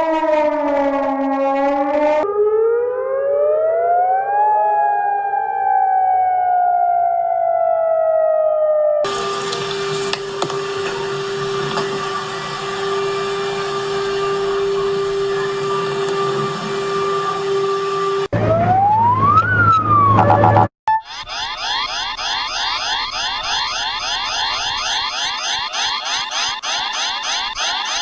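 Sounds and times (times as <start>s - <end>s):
siren wailing: 0.0s - 28.0s
steady alarm tone: 20.0s - 28.0s.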